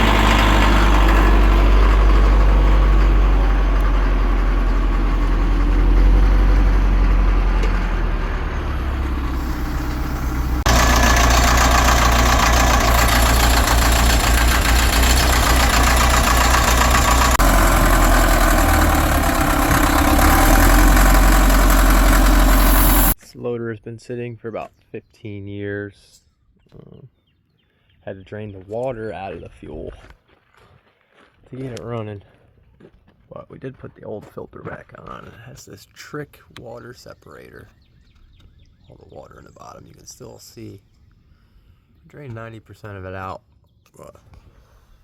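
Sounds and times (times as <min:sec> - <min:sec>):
diesel engine rumbling: 0:00.0 - 0:23.2.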